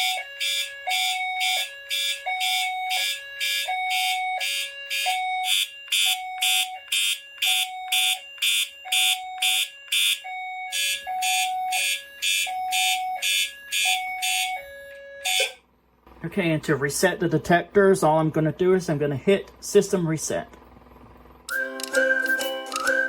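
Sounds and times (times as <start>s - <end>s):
rapid pulsing alarm horn: 0.0s - 15.6s
two-tone hi-lo alarm tone: 0.0s - 15.6s.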